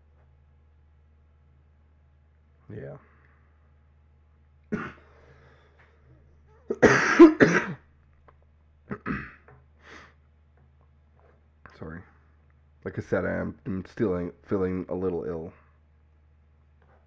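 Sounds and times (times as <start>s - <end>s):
man coughing: 4.7s - 5.2s, 6.7s - 7.8s, 8.9s - 9.4s
throat clearing: 4.7s - 5.2s, 6.7s - 7.8s, 8.9s - 9.5s.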